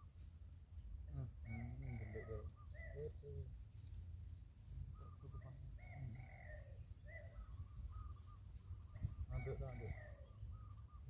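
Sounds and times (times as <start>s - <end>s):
birds calling: 0.0s - 11.0s
dove-like cooing: 1.1s - 3.5s, 4.8s - 11.0s.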